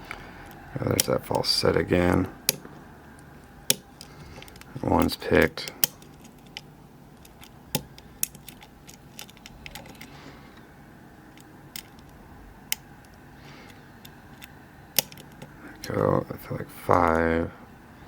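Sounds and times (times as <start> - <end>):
lock pick metallic clicks: 2.4 - 10.1, 11.3 - 15.6.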